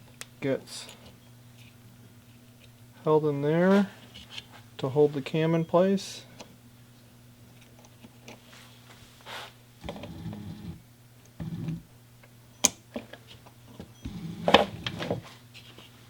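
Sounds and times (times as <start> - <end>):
faint steady hum: 0.0 - 16.0
fumbling handling noises: 7.5 - 11.9, 12.9 - 16.0.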